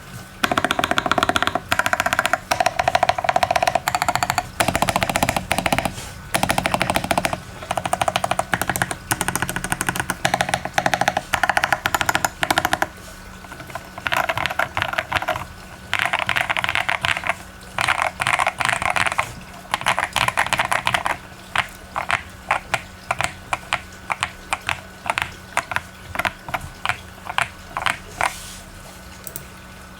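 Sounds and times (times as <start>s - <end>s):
mechanical keyboard typing: 0.4s - 28.4s.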